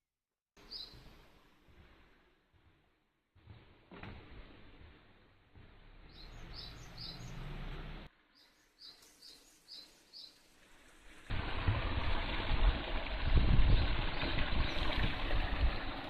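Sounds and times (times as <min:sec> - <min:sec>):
small bird chirping: 0:00.6 - 0:01.1, 0:06.0 - 0:07.5, 0:08.3 - 0:10.5.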